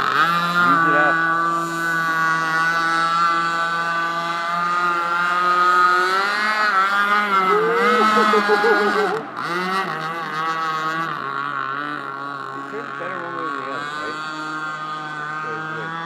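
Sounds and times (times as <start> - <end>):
small boat engine running: 0.0 - 16.0.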